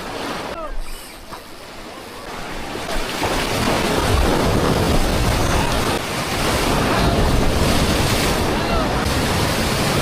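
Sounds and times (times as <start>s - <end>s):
surf washing over rocks: 0.0s - 10.0s.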